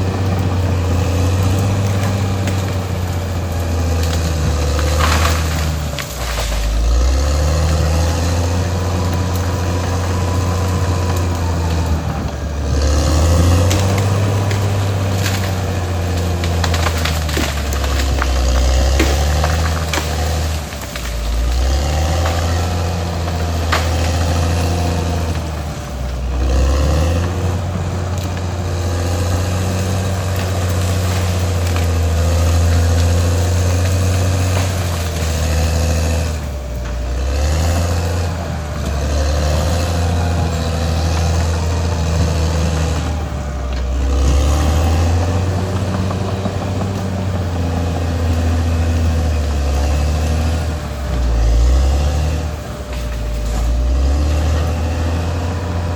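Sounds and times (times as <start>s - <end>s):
bulldozer diesel engine running: 0.0s - 55.9s.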